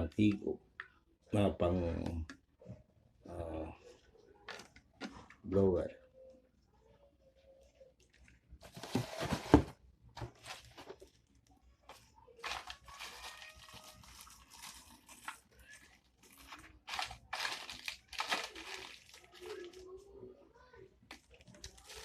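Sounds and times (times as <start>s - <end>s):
plastic packaging crinkling: 10.3s - 20.0s, 21.1s - 22.0s.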